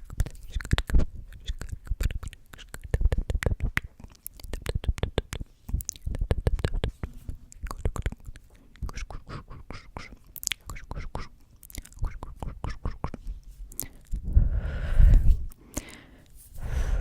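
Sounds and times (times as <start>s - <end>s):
mouth clicks: 0.0s - 14.3s
person whispering: 8.7s - 17.0s.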